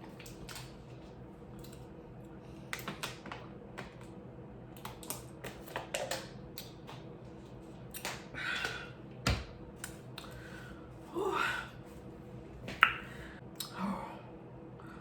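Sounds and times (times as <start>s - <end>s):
wet mouth clicks and crunches: 7.9s - 8.2s.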